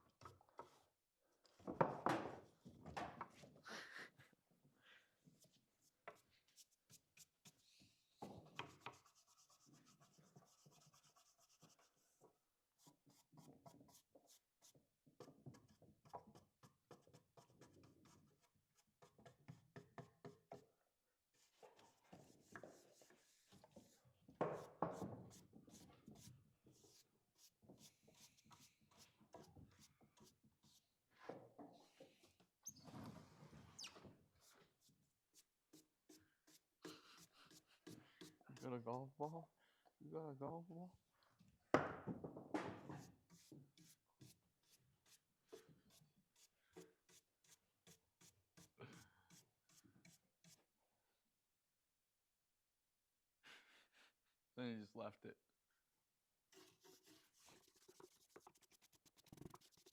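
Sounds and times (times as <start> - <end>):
faint scratching and rubbing: 56.5 - 59.9.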